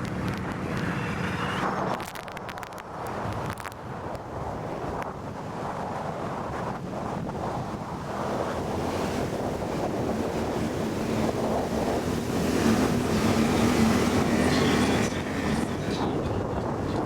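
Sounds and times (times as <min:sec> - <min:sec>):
wind buffeting microphone: 0:00.0 - 0:17.0
outboard motor running: 0:07.4 - 0:16.9.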